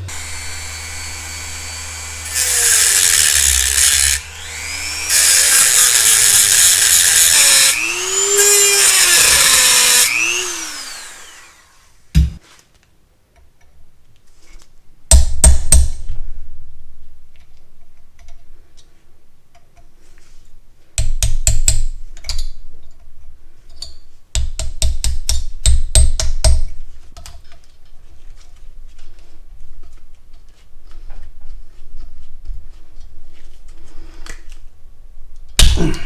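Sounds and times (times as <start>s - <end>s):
power cutting tool motor: 0.0s - 11.9s.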